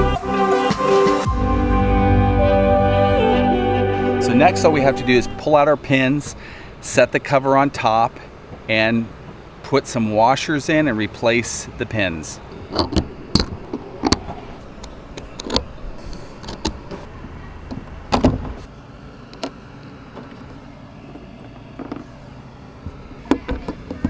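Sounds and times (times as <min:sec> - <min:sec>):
steady low hum: 0:00.0 - 0:09.6.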